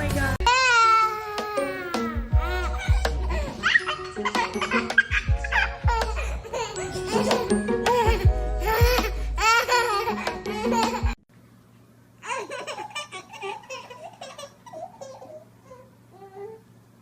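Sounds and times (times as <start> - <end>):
music: 0.0 - 11.2.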